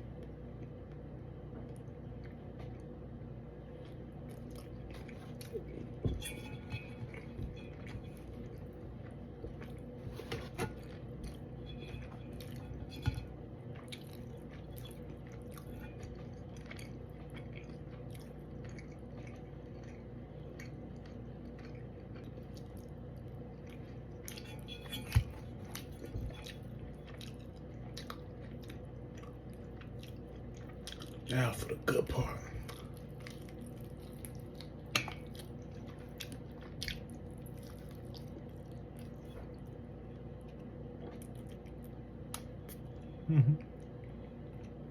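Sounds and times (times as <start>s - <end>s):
person chewing wetly: 3.7s - 10.0s, 10.8s - 31.4s, 32.6s - 44.8s.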